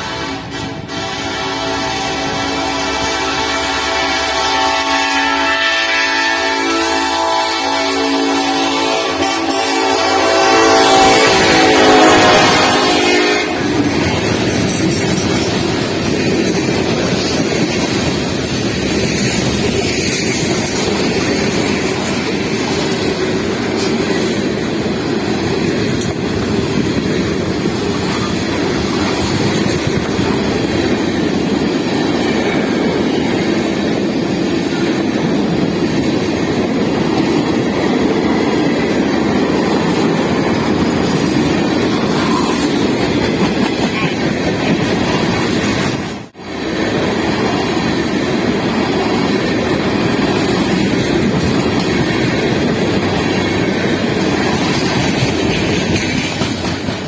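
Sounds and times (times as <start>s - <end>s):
freight train wheels rumbling: 0.0s - 57.0s
rail joint clicks: 13.6s - 33.7s, 39.0s - 46.2s, 47.3s - 57.0s.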